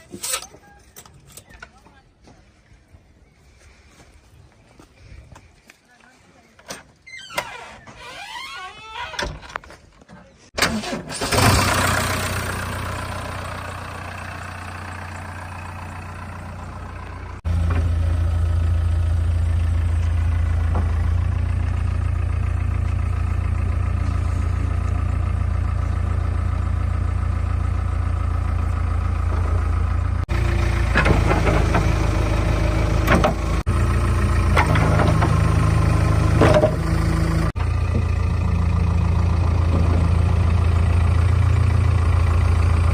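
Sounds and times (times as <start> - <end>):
diesel engine starting and idling: 10.5 - 42.9.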